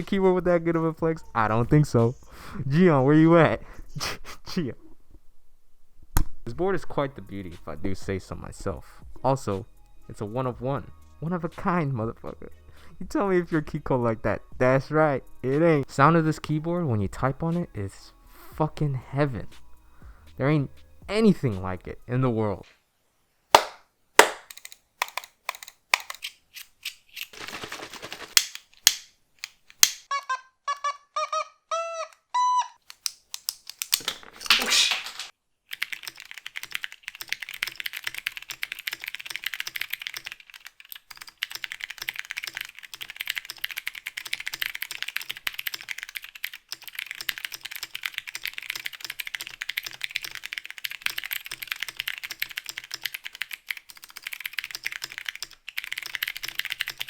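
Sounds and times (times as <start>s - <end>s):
separate clicks: 24.2s - 27.3s, 28.4s - 30.1s, 32.8s - 34.2s
fast keyboard typing clatter: 27.4s - 28.6s, 35.7s - 57.0s.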